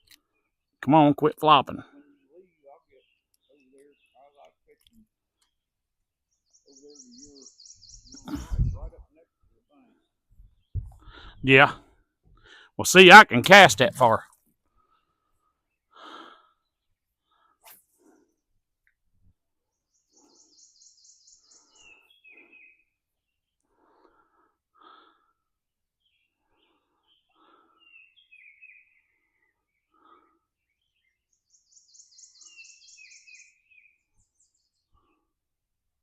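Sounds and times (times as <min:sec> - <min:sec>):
songbird trilling: 0:06.4 - 0:08.7, 0:27.1 - 0:29.5, 0:30.8 - 0:34.0
heavy congested breathing: 0:08.0 - 0:09.0, 0:10.9 - 0:12.8, 0:14.6 - 0:18.5, 0:20.1 - 0:25.7, 0:26.3 - 0:28.2, 0:29.8 - 0:30.6.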